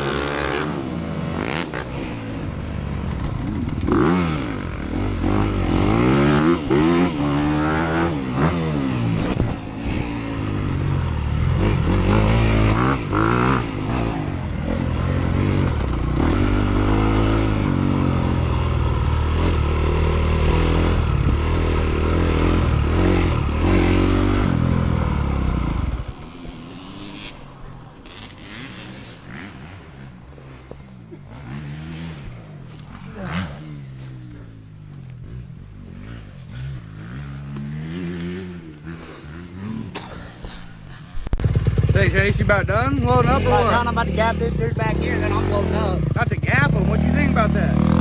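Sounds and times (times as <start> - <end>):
dirt bike engine revving: 0.0 - 48.0.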